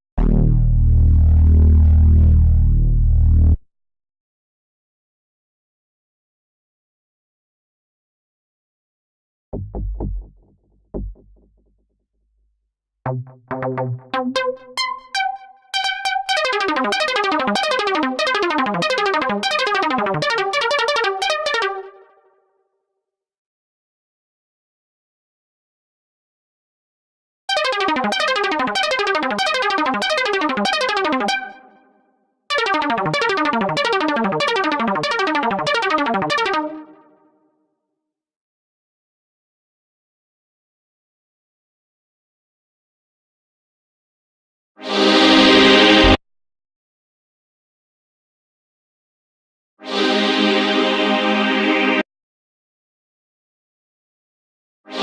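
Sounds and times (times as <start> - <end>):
pulsing synth line: 0.2 - 3.6, 13.1 - 17.0
synthesizer music: 0.2 - 3.6, 13.1 - 22.1, 27.6 - 31.6, 32.5 - 37.0, 45.3 - 46.2.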